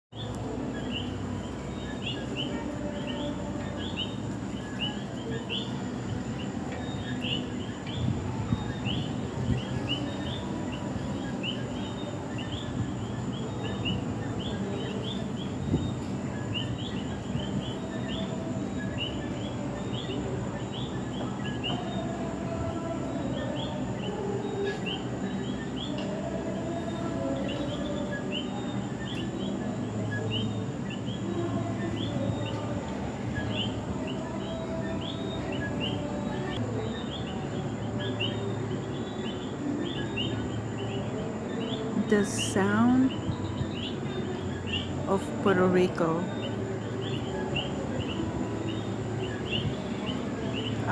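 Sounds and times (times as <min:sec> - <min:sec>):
frogs chirping: 0:00.1 - 0:50.9.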